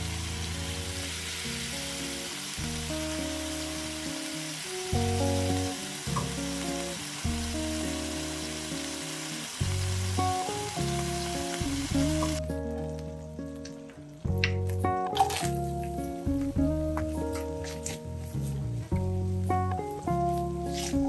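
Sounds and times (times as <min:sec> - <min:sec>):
sizzling hiss: 0:00.0 - 0:12.4, 0:17.5 - 0:21.0
background music: 0:00.0 - 0:21.0.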